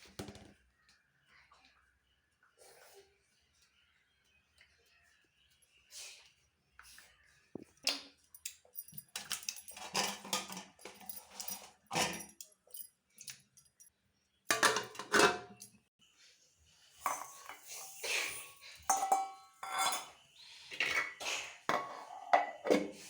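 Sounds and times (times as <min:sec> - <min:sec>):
kitchen knocks and clinks: 0:08.4 - 0:13.4, 0:14.5 - 0:15.8, 0:17.0 - 0:20.2, 0:21.7 - 0:23.0.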